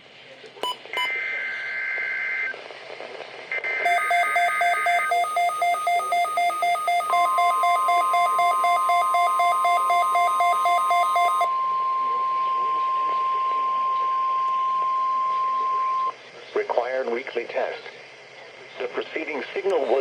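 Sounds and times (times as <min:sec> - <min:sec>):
steady alert tone: 0:03.9 - 0:11.5
warbling two-tone digital header: 0:03.9 - 0:11.5
weather radio alert beeps: 0:03.9 - 0:11.5.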